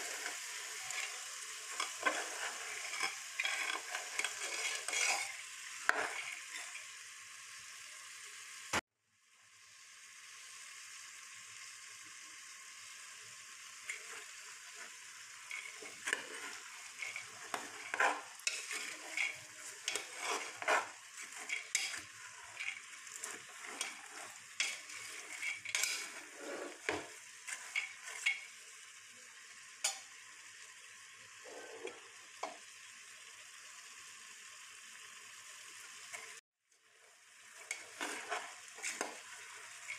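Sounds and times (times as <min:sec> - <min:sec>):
spatula scraping a pan: 0:00.0 - 0:07.0, 0:13.6 - 0:28.8, 0:31.4 - 0:32.6, 0:37.0 - 0:39.9
chickpeas sizzling in oil: 0:00.0 - 0:39.9.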